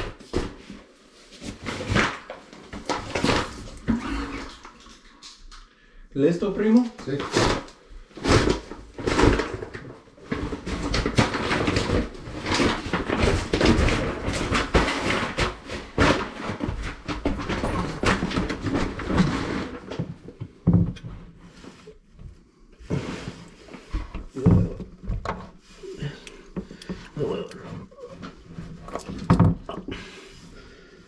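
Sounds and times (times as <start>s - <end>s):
toilet handling knocks and scrapes: 10.5s - 30.1s.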